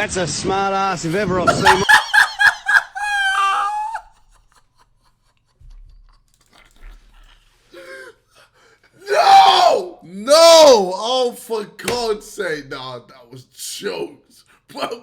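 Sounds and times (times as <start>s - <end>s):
loud shout: 1.6s - 4.0s, 9.0s - 11.0s
man's drawn-out vocal exclamation: 9.0s - 11.0s.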